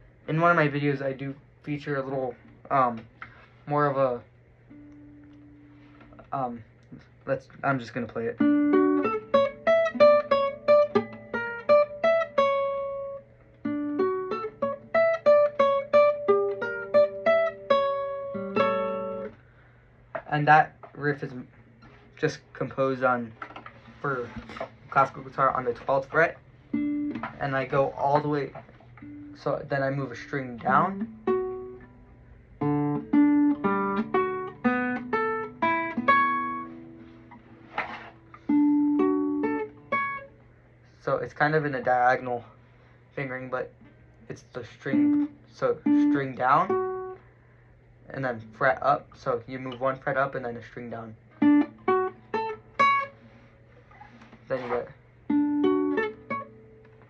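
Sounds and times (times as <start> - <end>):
classical guitar plucked notes: 4.7 - 6.2, 8.3 - 19.4, 26.7 - 40.4, 44.8 - 47.2, 51.3 - 57.0
fingers scraping guitar strings: 23.2 - 26.3, 36.0 - 38.8.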